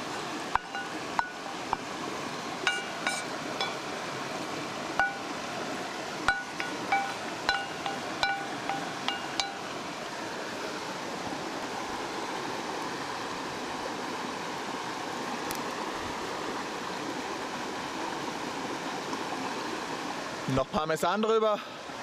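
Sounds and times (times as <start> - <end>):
metal utensil clinking on cookware: 2.7 - 3.8, 6.3 - 9.6.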